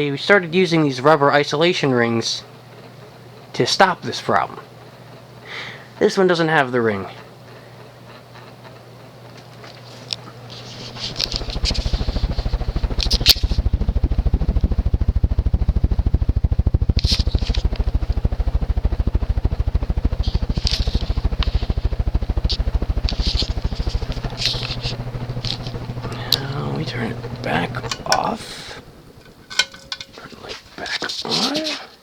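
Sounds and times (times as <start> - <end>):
ceiling fan motor humming: 0.0 - 32.0
low fluttering pulse: 10.5 - 31.1.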